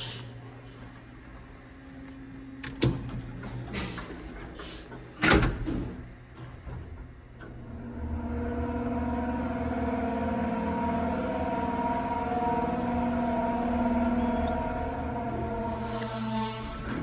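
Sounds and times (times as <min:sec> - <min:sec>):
elevator motor whining: 0:07.3 - 0:17.0
metal-on-metal scraping: 0:14.1 - 0:17.0.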